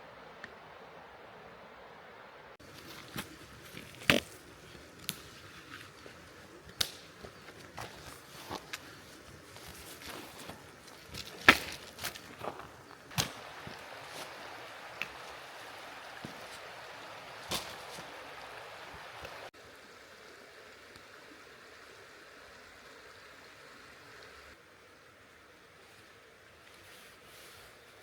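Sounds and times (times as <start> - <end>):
mountain stream flowing: 0.0 - 28.0.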